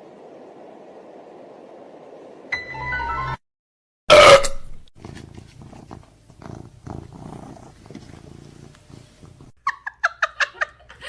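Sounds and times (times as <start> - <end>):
cat purring: 5.0 - 9.6.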